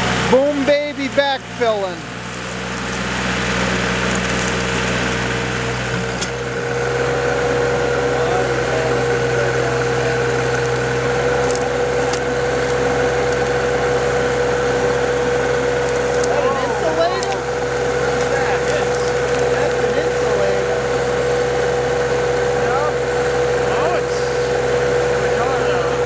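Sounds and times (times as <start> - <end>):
backhoe engine running: 0.0 - 26.0
steady high hum: 0.0 - 26.0.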